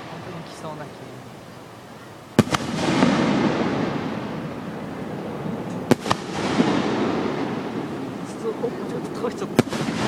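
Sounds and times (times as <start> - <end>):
fireworks bangs: 2.3 - 10.0
rumbling fireworks tail: 2.3 - 10.0.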